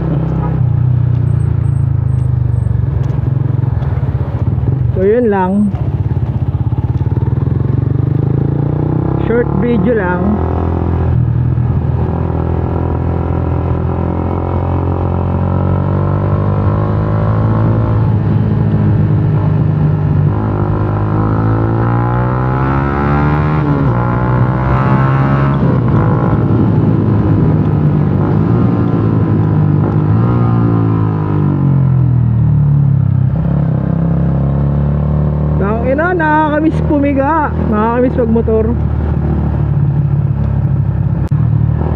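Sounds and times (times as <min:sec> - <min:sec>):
motorcycle engine revving: 0:00.0 - 0:41.9.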